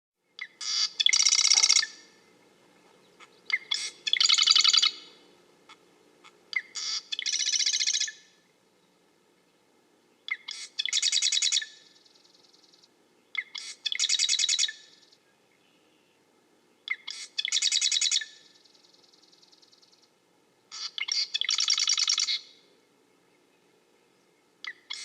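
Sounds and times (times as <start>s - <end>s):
wren singing trills: 0.4s - 2.3s, 3.0s - 5.2s, 6.5s - 8.2s, 10.2s - 16.0s, 16.7s - 20.1s, 20.7s - 22.6s.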